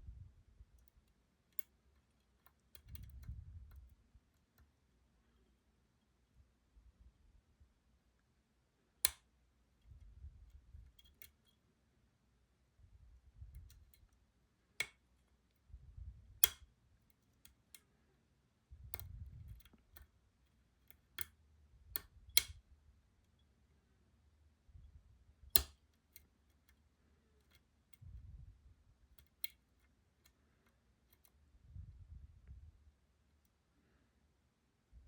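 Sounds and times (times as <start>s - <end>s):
lock pick clicking: 0.8s - 4.7s, 10.8s - 11.5s, 13.5s - 14.1s, 16.4s - 17.8s, 25.5s - 26.8s.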